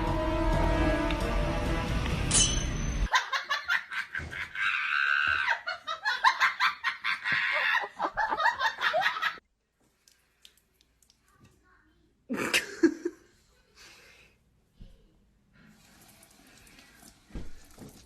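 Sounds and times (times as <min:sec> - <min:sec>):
background music: 0:00.0 - 0:03.1
person laughing hard: 0:03.1 - 0:09.4.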